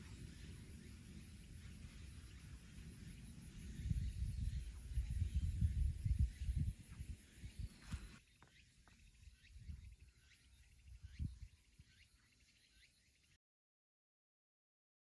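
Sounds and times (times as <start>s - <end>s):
wind on microphone: 0.0s - 8.2s, 9.2s - 10.1s, 10.8s - 11.9s
faint high chirps: 0.0s - 13.4s.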